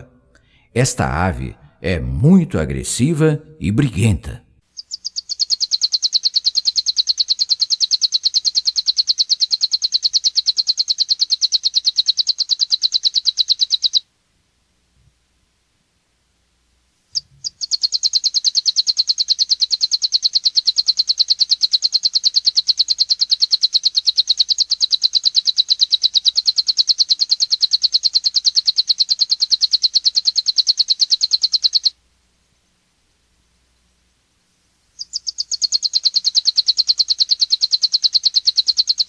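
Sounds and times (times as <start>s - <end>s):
finch singing fast trill: 4.8s - 14.0s, 17.2s - 31.9s, 35.0s - 39.0s.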